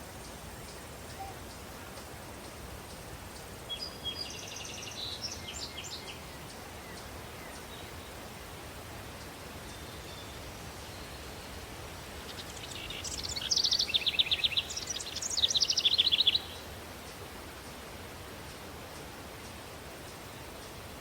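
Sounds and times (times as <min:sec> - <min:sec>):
steady breeze: 0:00.0 - 0:21.0
bird singing: 0:03.7 - 0:08.0, 0:12.3 - 0:16.6.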